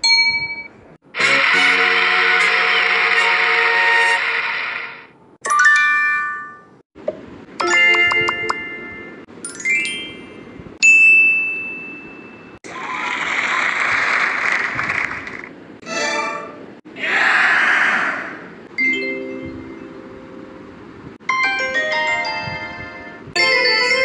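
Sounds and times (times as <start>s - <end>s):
bell chimes and dings: 0.0s - 0.8s, 5.5s - 6.8s, 7.6s - 12.6s, 18.8s - 20.4s, 21.3s - 24.0s
steady noisy rush: 1.0s - 5.3s.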